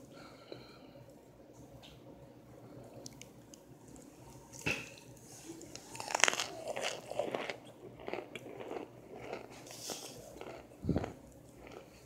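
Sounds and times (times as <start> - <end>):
person crunching cornstarch: 5.8 - 12.0.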